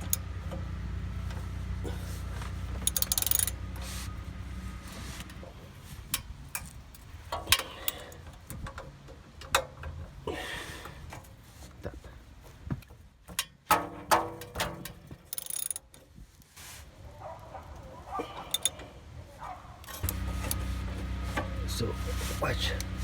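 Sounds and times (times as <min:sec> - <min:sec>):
wrench clicking against bolts: 0:00.0 - 0:00.3, 0:02.8 - 0:03.6, 0:06.2 - 0:10.0, 0:14.8 - 0:16.0, 0:18.5 - 0:18.8
low steady hum: 0:19.8 - 0:23.0.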